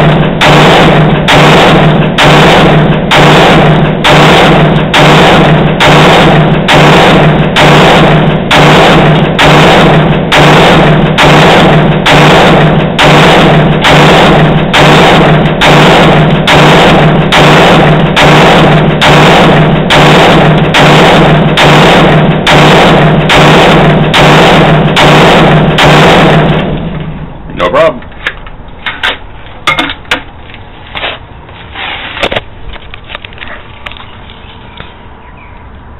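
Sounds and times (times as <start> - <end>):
heavy drum beat: 0.0 - 26.9.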